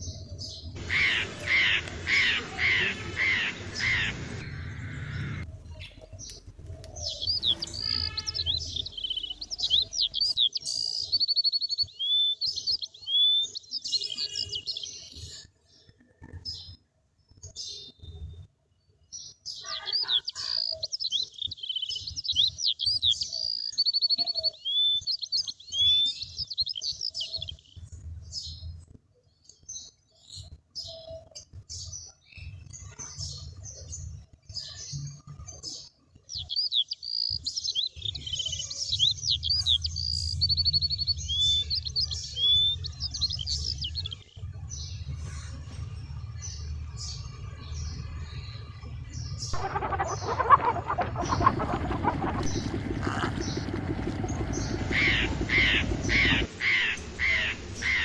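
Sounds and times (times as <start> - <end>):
songbirds chirping and trilling: 0.0 - 58.0
low rumble: 44.5 - 58.0.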